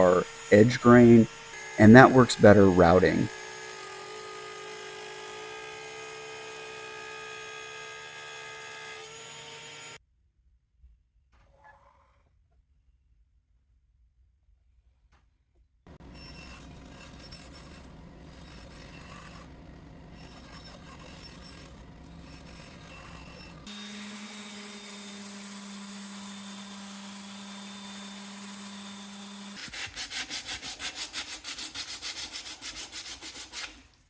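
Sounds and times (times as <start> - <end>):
power tool working wood: 0.0 - 10.0, 15.9 - 33.8
steady motor hum: 0.0 - 10.0, 15.9 - 29.6
rapid rhythmic rubbing strokes: 15.9 - 23.7.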